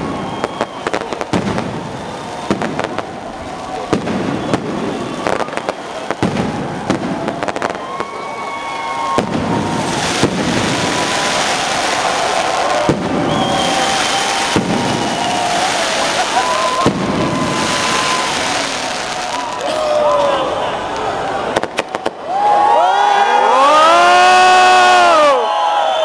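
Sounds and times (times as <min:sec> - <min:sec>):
firework whistling tones: 0:00.0 - 0:19.8
firework bangs: 0:00.0 - 0:20.0, 0:21.5 - 0:22.3
fireworks crackle: 0:00.0 - 0:20.3, 0:21.0 - 0:22.2.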